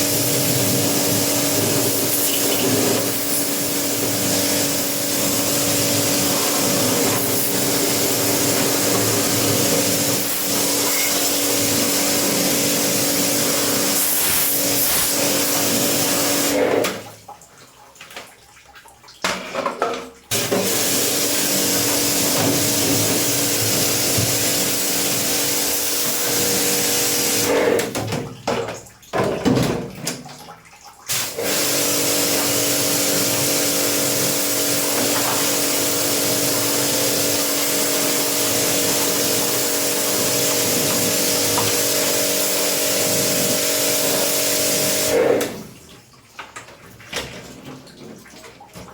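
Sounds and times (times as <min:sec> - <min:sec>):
water spraying: 0:00.0 - 0:16.6, 0:20.3 - 0:27.8, 0:31.1 - 0:45.8
pressure washer pump humming: 0:00.0 - 0:17.0, 0:20.3 - 0:27.9, 0:31.1 - 0:45.8.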